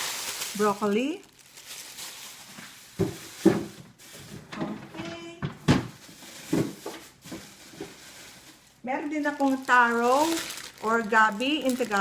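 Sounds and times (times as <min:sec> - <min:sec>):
rustling: 0:00.0 - 0:04.5.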